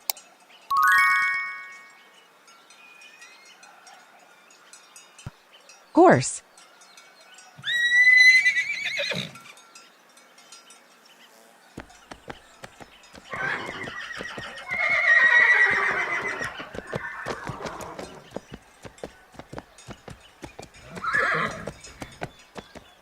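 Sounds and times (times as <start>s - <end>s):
horse whinnying: 7.6s - 9.6s, 13.3s - 18.3s, 20.8s - 21.8s
hooves clip-clopping: 11.8s - 23.0s.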